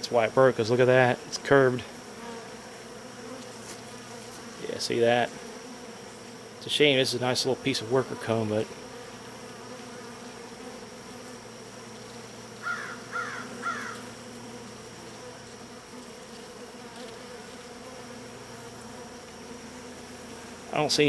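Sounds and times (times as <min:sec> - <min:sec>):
honeybees buzzing: 0:00.0 - 0:21.0
bird calling: 0:12.6 - 0:14.0.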